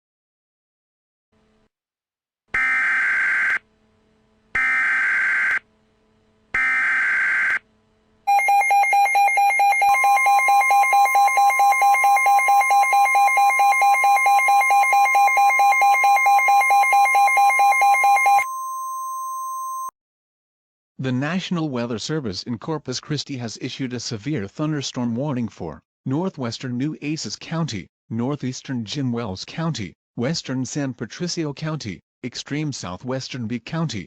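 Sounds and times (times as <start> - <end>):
steady single-pitch alert tone: 8.3 - 19.9.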